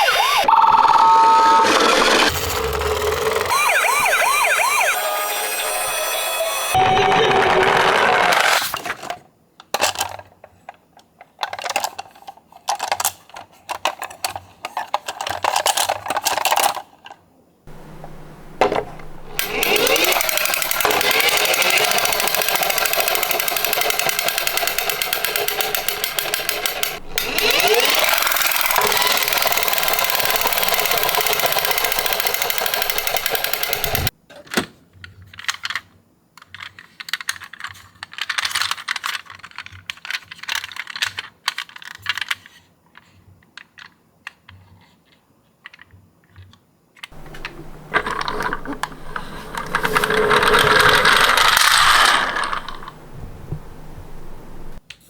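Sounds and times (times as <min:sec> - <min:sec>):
toy cars rattling down a slope: 0:19.4 - 0:34.1, 0:47.2 - 0:53.0.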